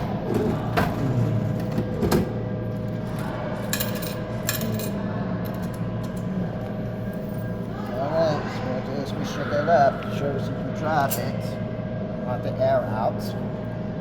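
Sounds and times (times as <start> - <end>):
vending machine hum: 0.0 - 14.0
coins and can clinking: 3.7 - 5.8.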